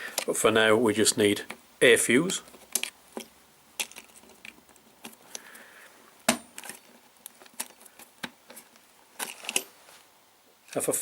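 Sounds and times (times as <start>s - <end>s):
plastic parts clicking: 2.5s - 5.5s, 6.5s - 9.7s.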